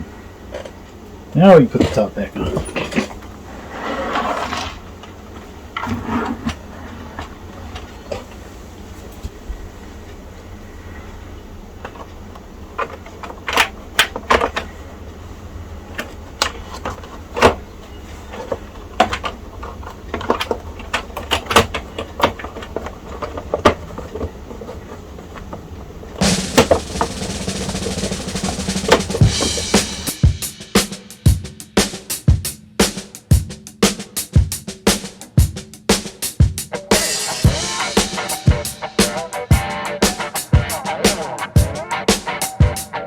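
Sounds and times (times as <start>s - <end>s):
computer case parts clicking: 5.0s - 9.3s, 11.5s - 30.2s
drum-like hits: 26.2s - 42.9s.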